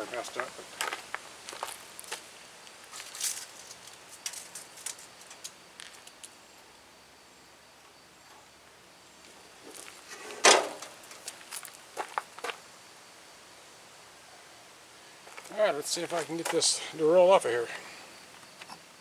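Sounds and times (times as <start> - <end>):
crackling footsteps: 0.0 - 6.4, 9.2 - 12.7, 15.2 - 19.0
handling noises: 0.3 - 6.4, 9.3 - 12.6.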